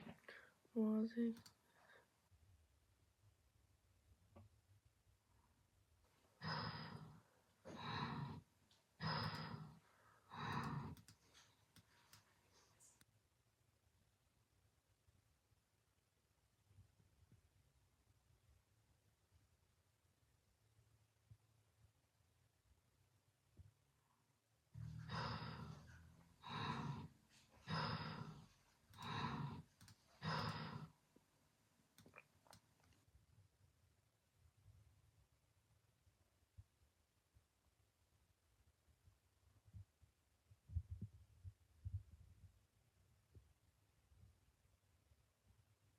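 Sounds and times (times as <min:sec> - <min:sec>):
person snoring: 0:06.4 - 0:11.1, 0:24.8 - 0:31.0.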